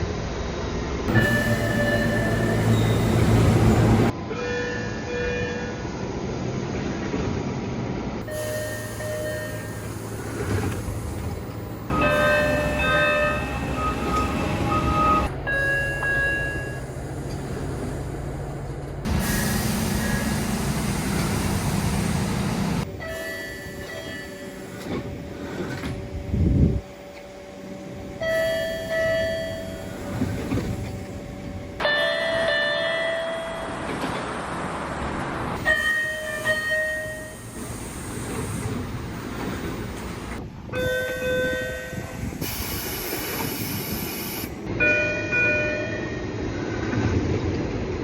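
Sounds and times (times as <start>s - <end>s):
train motors and rail noise: 0.0s - 48.0s
train door chimes: 1.1s - 5.6s, 8.3s - 10.7s, 11.9s - 16.9s, 23.0s - 25.0s, 28.2s - 30.8s, 31.8s - 34.2s, 35.6s - 37.5s, 40.7s - 42.3s.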